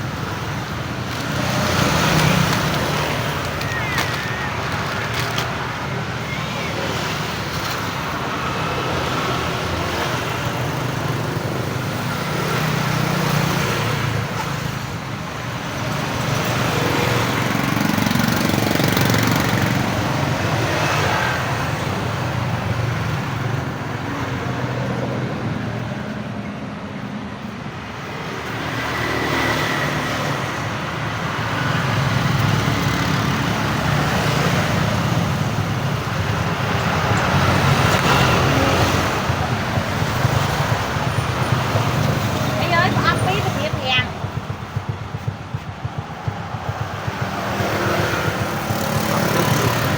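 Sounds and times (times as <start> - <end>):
road traffic: 0.0 - 49.9.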